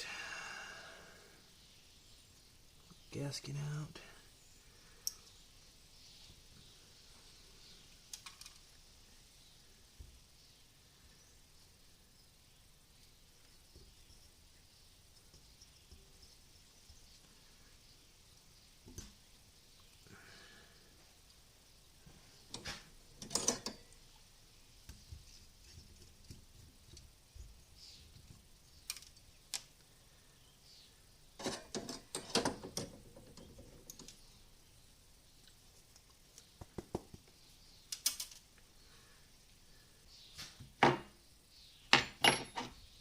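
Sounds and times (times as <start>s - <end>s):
small metal parts clattering: 22.5s - 23.9s, 31.4s - 34.2s, 41.9s - 42.8s.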